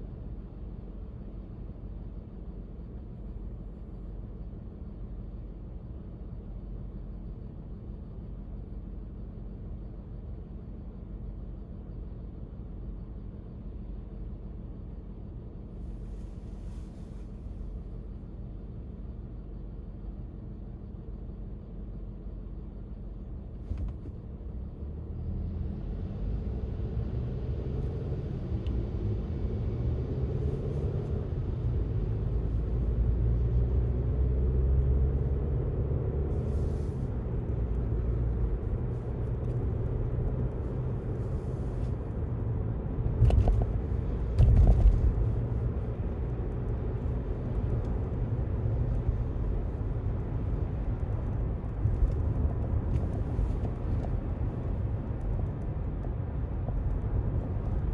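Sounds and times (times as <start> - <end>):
road traffic rumble: 21.7 - 57.9.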